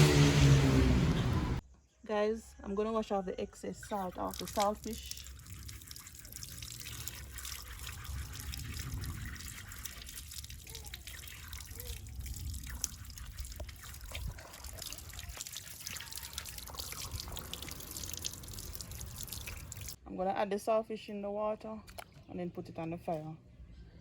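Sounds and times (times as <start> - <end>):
water trickling and splashing: 3.8 - 20.0.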